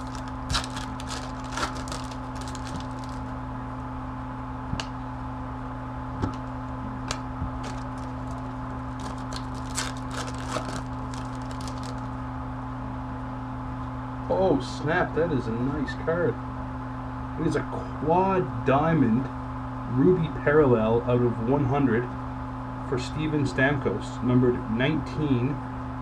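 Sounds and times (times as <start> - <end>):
cards clicking and flicking: 0.0 - 3.3, 6.2 - 12.1
electrical hum: 0.0 - 26.0.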